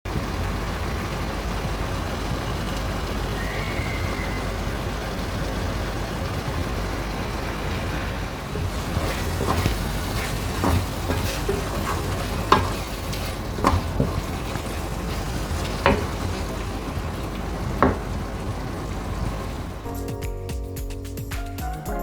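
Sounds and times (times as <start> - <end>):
food sizzling in a frying pan: 8.5 - 19.8
utensil knocking against pan: 8.6 - 18.3.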